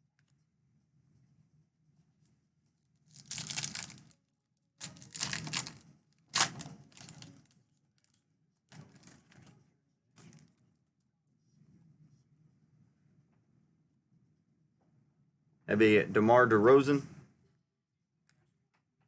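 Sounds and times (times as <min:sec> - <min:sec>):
foil wrapper tearing and crinkling: 0:03.1 - 0:04.2, 0:04.8 - 0:08.2.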